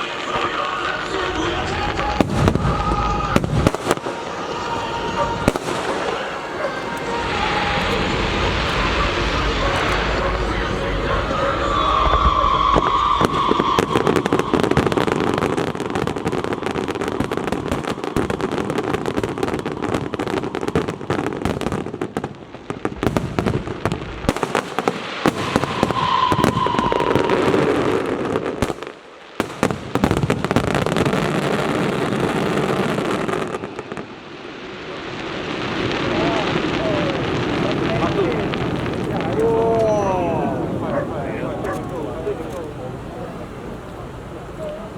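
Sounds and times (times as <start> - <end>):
fireworks and firecrackers crackling: 0.0 - 44.9.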